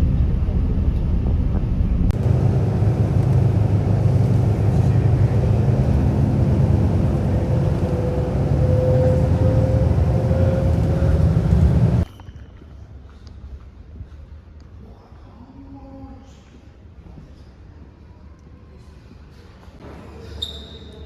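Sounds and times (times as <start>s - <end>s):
vehicle rumble from inside: 0.9s - 12.1s
faint whine: 2.2s - 12.1s.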